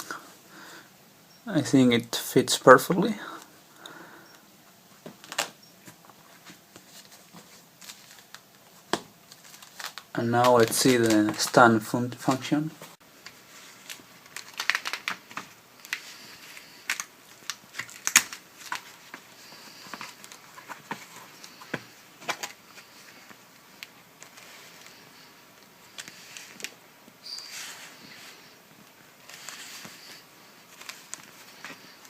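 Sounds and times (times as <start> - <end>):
tablet case clicks and rustles: 13.2 - 25.0.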